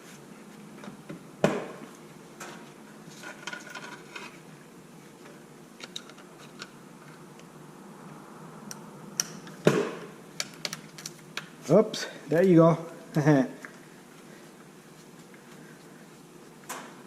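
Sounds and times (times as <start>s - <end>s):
clicks and clatter of parts: 2.4s - 4.4s, 5.8s - 7.2s, 10.4s - 11.5s.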